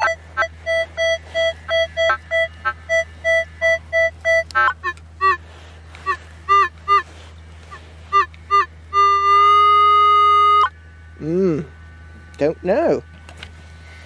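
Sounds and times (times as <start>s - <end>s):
metal detector beeps: 0.0s - 5.4s, 6.0s - 7.1s, 7.7s - 10.7s
metal detector steady tone: 0.0s - 14.0s.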